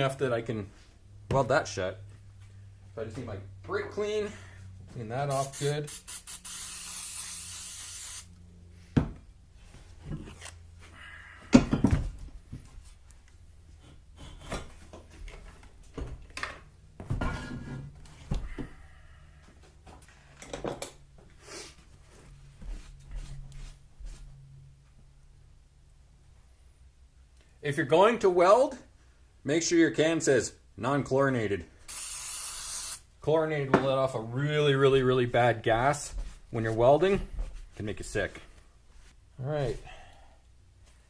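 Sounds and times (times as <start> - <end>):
aerosol spray hissing: 5.3 - 8.3, 31.9 - 33.0.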